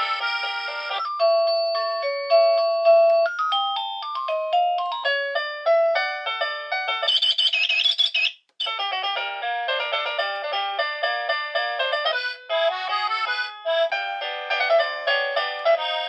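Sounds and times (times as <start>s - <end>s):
doorbell electronic melody: 0.0s - 7.0s.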